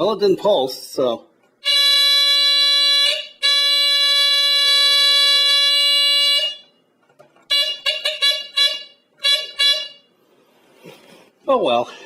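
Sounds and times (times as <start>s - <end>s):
smoke alarm horn: 1.6s - 6.9s, 7.5s - 10.2s.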